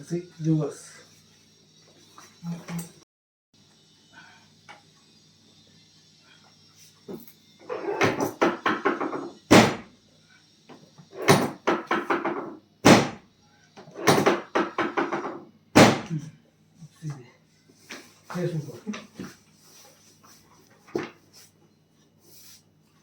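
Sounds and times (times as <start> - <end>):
treatment table knocks and thud: 8.0 - 9.9, 11.2 - 13.2, 13.9 - 16.1.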